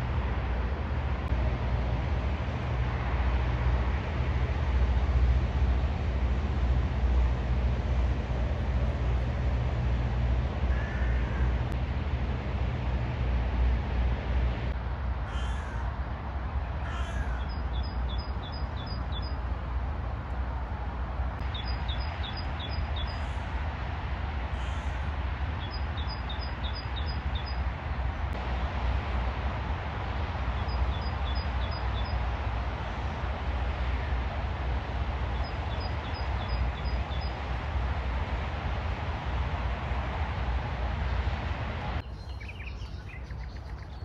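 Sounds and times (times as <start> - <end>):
low traffic rumble: 0.0 - 44.0
rain hiss: 21.4 - 26.0.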